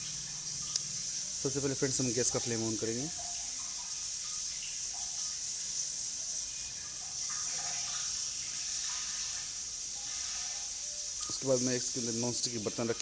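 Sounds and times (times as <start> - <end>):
gas burner hissing: 7.7 - 13.0.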